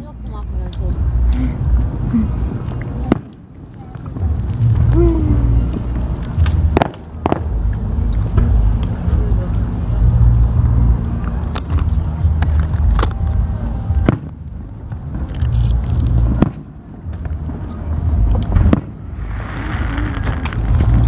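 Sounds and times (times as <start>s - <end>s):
fireworks crackling: 2.4s - 9.0s, 14.0s - 21.0s
fireworks booming and cracking: 2.4s - 9.1s, 13.9s - 21.0s.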